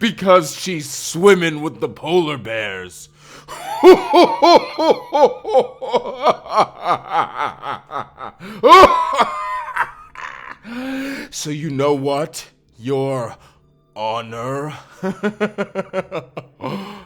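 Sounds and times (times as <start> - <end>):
man cackling maniacally: 3.5 - 10.7, 15.0 - 17.0.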